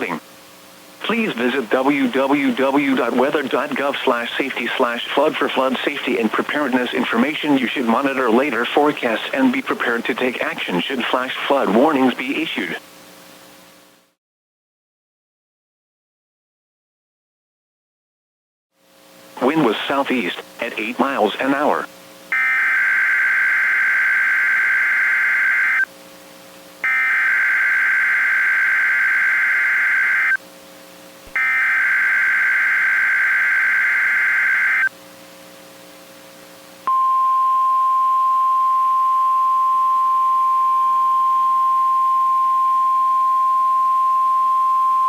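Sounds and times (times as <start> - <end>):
steady warning tone: 19.4 - 25.9, 26.8 - 30.4, 31.4 - 34.9, 36.9 - 45.0
harsh digital data warble: 20.7 - 25.9, 26.8 - 30.4, 31.4 - 34.9.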